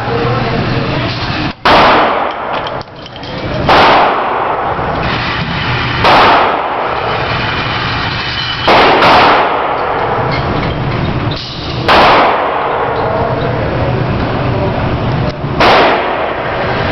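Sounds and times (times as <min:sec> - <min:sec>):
gunshots with echo: 0:01.6 - 0:02.9, 0:03.6 - 0:10.3, 0:11.8 - 0:13.4, 0:15.6 - 0:16.9.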